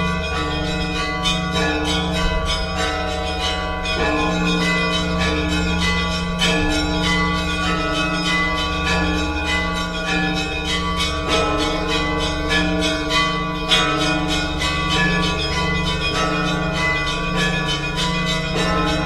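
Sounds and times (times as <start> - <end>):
deep bells humming: 0.0 - 19.0
small church bells ringing: 0.0 - 19.0.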